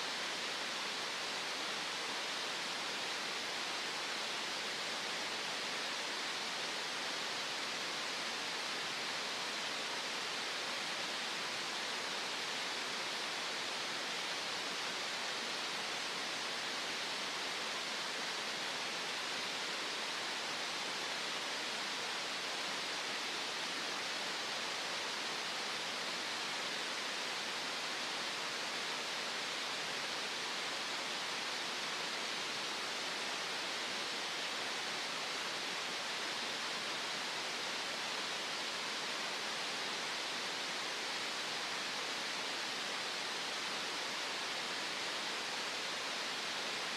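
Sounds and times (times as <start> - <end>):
steady synthetic hiss: 0.0 - 46.9.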